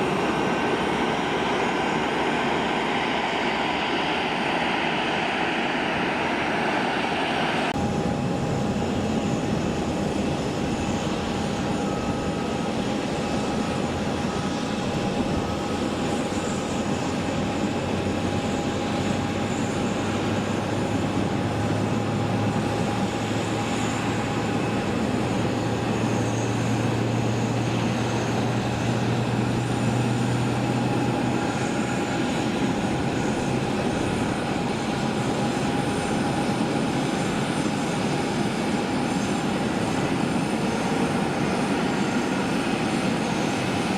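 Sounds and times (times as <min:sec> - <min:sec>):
engine whine: 0:00.0 - 0:43.9
jet engines running: 0:00.0 - 0:43.9.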